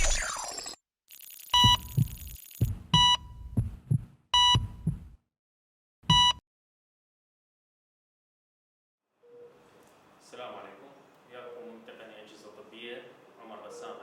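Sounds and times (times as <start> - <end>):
patient monitor beeps: 1.5 - 2.4, 4.4 - 4.8, 6.1 - 6.4
heartbeat thumps: 1.6 - 5.2, 6.1 - 6.3.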